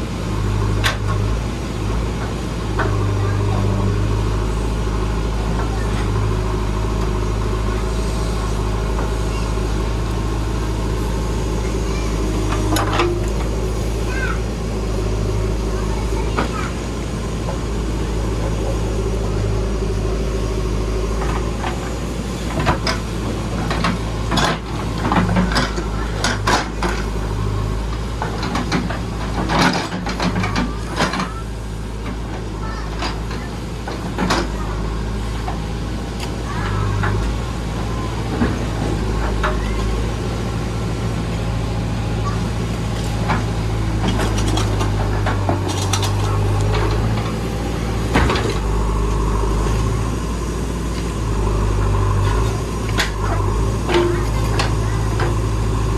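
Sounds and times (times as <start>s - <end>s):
diesel engine running: 0.0s - 55.9s
sharp clanks and knocks: 12.4s - 14.3s, 22.5s - 27.2s, 28.2s - 31.4s, 43.0s - 49.9s, 50.9s - 55.9s.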